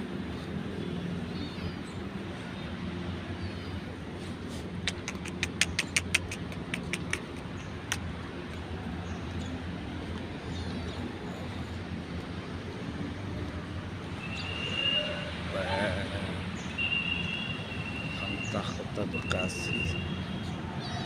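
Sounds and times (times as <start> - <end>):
vehicle and street rumble: 0.0 - 21.0
sharp clicks: 4.8 - 8.1.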